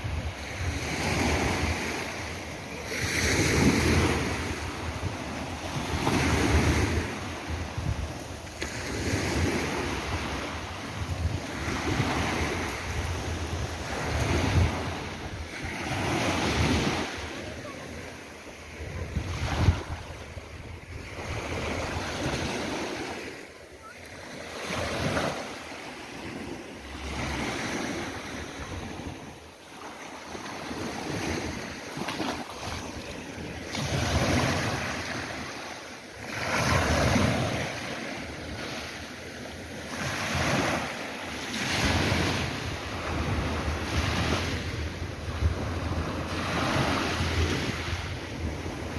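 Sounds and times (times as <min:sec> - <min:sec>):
sea waves breaking: 0:00.2 - 0:48.9.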